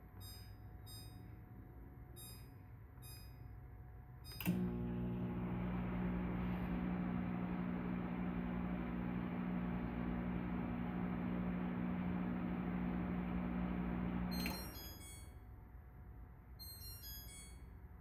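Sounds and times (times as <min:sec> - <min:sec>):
microwave humming with fan: 0:04.3 - 0:15.0
microwave keypad beeps: 0:07.3 - 0:15.4, 0:16.6 - 0:17.6.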